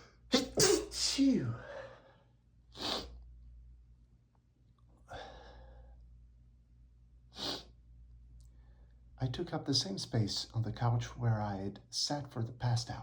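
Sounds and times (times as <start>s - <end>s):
man breathing quietly: 5.0s - 6.1s.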